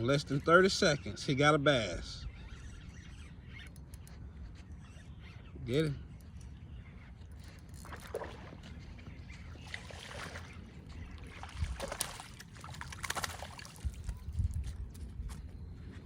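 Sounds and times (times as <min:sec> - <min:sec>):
water splashing: 0:09.6 - 0:14.1.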